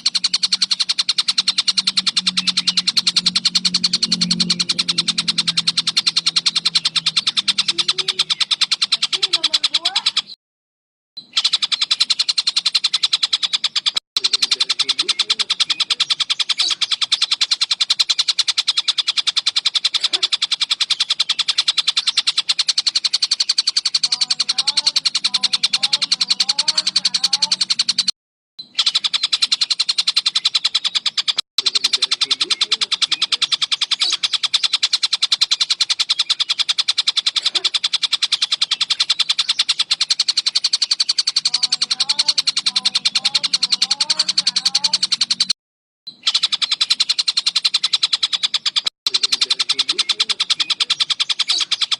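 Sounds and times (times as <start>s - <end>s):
faint bird whistles: 0.0s - 10.4s, 11.2s - 51.9s
kingfisher calling: 0.0s - 10.4s, 11.2s - 28.1s, 28.7s - 45.6s, 46.2s - 51.9s.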